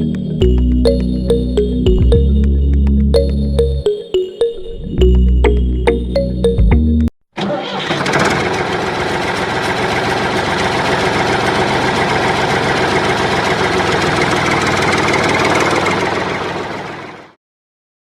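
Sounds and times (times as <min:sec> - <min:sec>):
small engine idling: 0:07.9 - 0:17.4.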